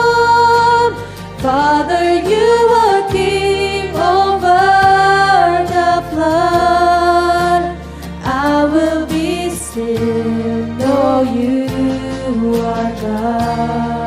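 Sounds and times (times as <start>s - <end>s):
slow worship music: 0.0s - 14.0s.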